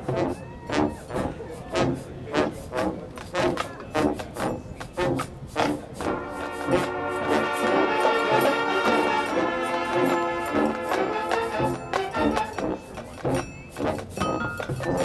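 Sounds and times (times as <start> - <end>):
brass and winds sustained chord: 5.7 - 13.1.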